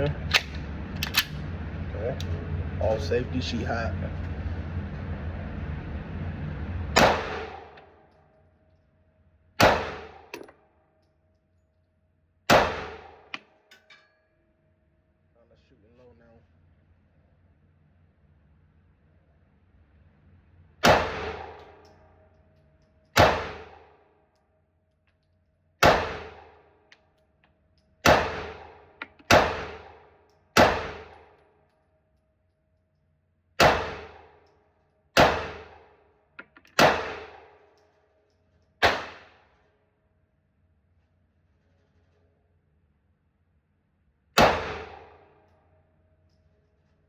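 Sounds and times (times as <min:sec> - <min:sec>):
pistol shots: 0:07.0 - 0:07.8, 0:09.6 - 0:10.5, 0:12.5 - 0:13.4, 0:20.8 - 0:21.8, 0:23.2 - 0:23.9, 0:25.8 - 0:26.6, 0:28.0 - 0:30.0, 0:30.6 - 0:31.3, 0:33.6 - 0:34.4, 0:35.2 - 0:35.9, 0:36.6 - 0:37.6, 0:38.8 - 0:39.4, 0:44.4 - 0:45.3.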